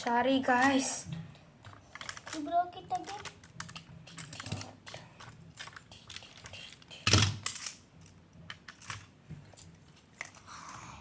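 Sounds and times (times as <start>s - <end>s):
plastic blocks clicking together: 1.6s - 10.4s.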